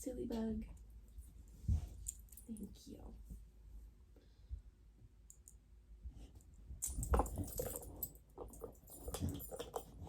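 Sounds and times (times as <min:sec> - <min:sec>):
dog claws clicking and scuffling: 0:06.8 - 0:10.0.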